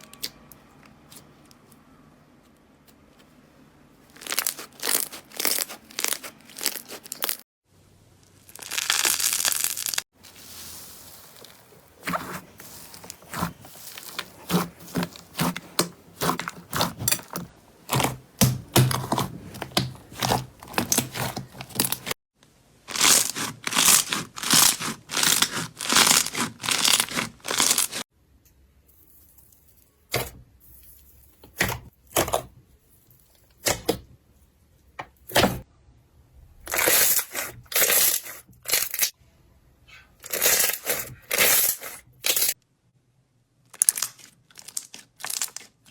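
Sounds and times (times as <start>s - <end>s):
slime squishing: 4.0s - 7.4s, 8.4s - 22.2s, 22.9s - 28.0s
slime crackling and popping: 4.1s - 7.4s, 8.4s - 10.0s.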